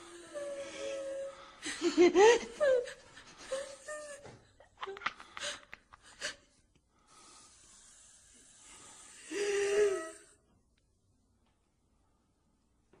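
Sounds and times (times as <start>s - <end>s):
faint hiss: 6.2s - 10.7s.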